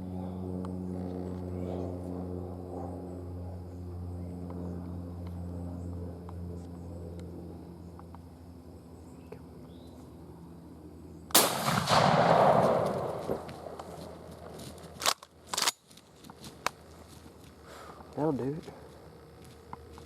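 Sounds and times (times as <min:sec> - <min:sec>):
shotgun blast with echo: 0:11.4 - 0:13.8.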